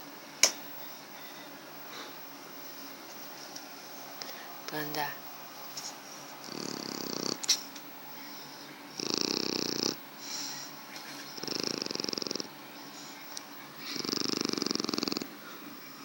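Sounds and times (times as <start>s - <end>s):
dog snoring: 6.4s - 7.6s, 8.9s - 10.5s, 11.3s - 12.6s, 13.8s - 15.6s.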